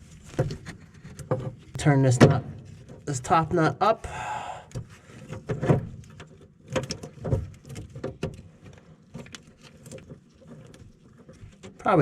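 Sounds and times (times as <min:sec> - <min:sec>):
metal clicks and knocks: 0:04.7 - 0:11.8.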